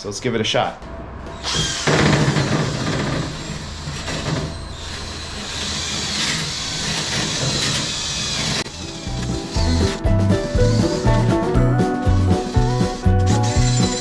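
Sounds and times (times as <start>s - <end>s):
power drill running: 1.3s - 10.0s, 12.4s - 14.0s.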